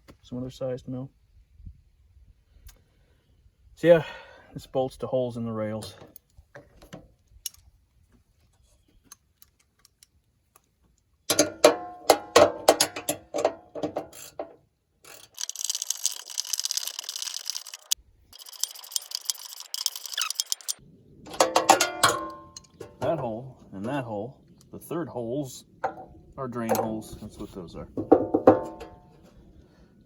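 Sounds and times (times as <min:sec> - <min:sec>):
metal clanking: 0:11.3 - 0:14.6, 0:18.6 - 0:23.2, 0:28.0 - 0:29.1
ratchet wrench clicking: 0:15.0 - 0:20.8.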